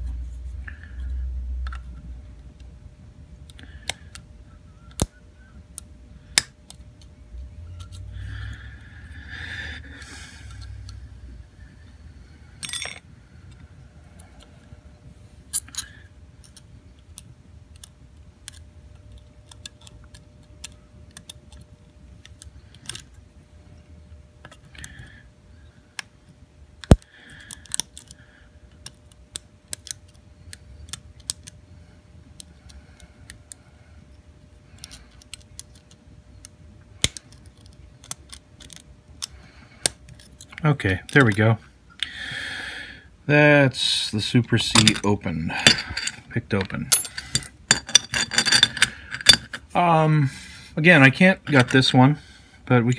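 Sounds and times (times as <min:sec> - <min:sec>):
lock picks clicking and scraping: 0:12.5 - 0:14.6, 0:15.5 - 0:23.2, 0:24.4 - 0:25.1, 0:26.8 - 0:31.6, 0:34.7 - 0:41.6, 0:44.5 - 0:49.7, 0:51.2 - 0:52.0.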